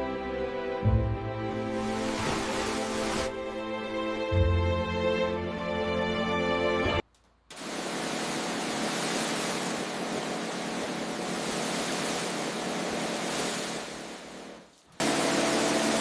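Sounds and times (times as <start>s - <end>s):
background music: 0.0s - 7.0s.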